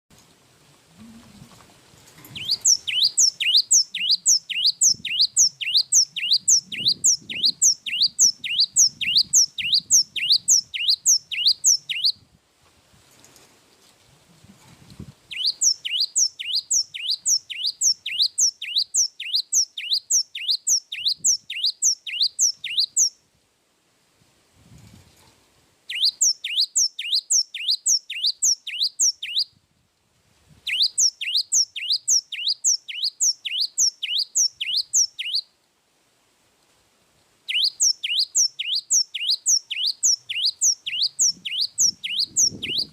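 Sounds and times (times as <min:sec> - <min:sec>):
bird singing whistled notes: 0:02.3 - 0:12.2, 0:15.3 - 0:23.2, 0:25.9 - 0:29.5, 0:30.6 - 0:35.5, 0:37.5 - 0:42.9.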